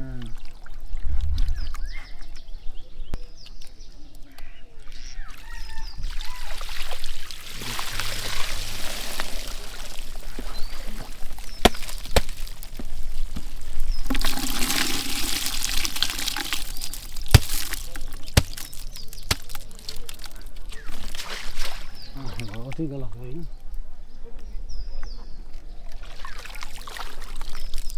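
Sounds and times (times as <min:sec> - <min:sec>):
water pouring and splashing: 0:05.3 - 0:22.2, 0:26.0 - 0:27.9.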